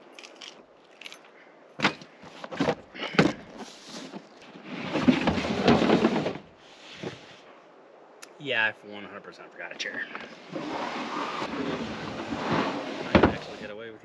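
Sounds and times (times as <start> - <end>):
camping gear knocks and clatters: 0.0 - 6.5
loud rustling and rattling: 1.8 - 7.2.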